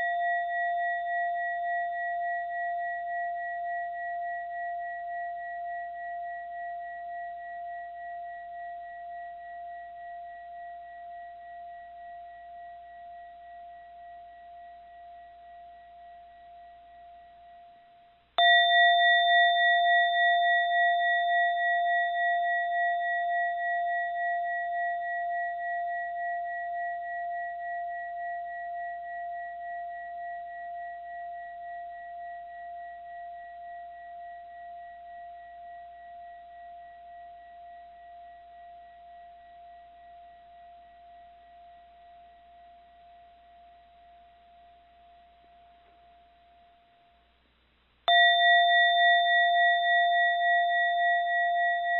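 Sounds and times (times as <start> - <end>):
mindfulness bell ringing: 18.4 - 26.8, 48.1 - 51.9.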